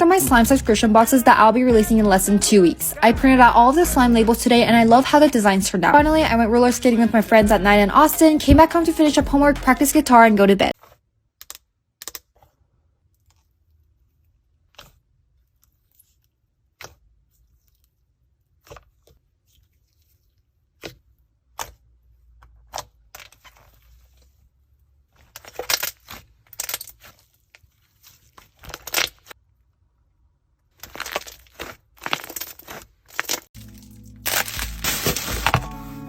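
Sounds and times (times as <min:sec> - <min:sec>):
slime crackling: 0:30.7 - 0:35.9.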